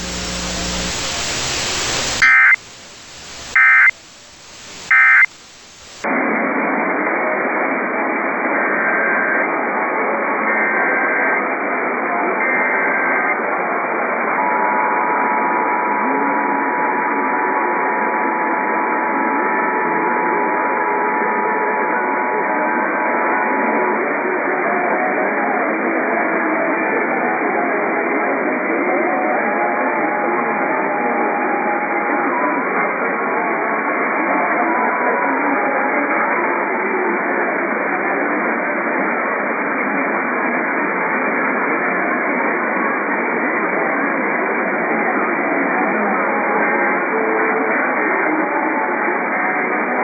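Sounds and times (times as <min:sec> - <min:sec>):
faint wavering radio music: 0:00.0 - 0:06.0
radio static and interference: 0:00.0 - 0:06.0
faint music on radio: 0:00.0 - 0:06.1, 0:07.4 - 0:14.4, 0:18.8 - 0:50.0.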